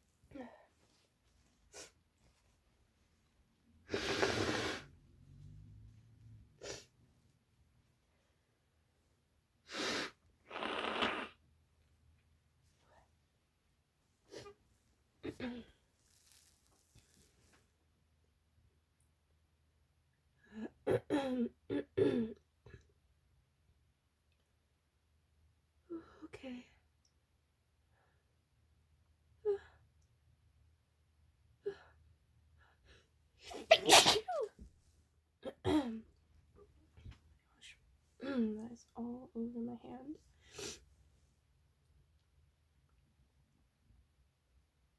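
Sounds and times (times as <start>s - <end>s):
woman sneezing: 33.5s - 34.6s.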